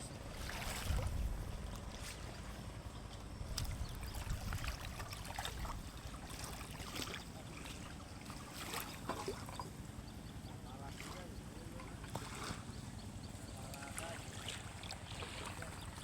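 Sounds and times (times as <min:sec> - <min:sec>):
steady low rumble: 0:00.0 - 0:06.3
water sloshing: 0:00.0 - 0:16.0
small splashes and crackles: 0:00.2 - 0:09.8, 0:10.9 - 0:12.7, 0:13.6 - 0:16.0.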